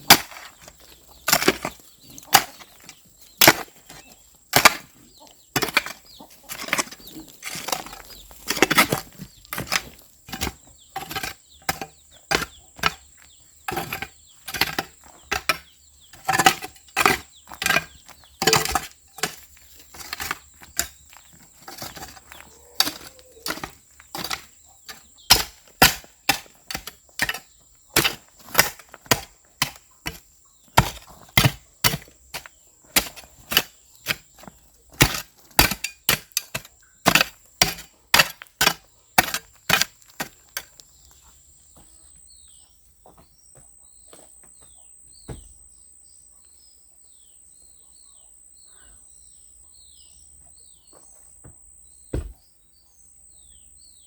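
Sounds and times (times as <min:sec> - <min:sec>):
hand tool striking: 0:00.0 - 0:40.8
birds chirping: 0:00.0 - 0:54.0.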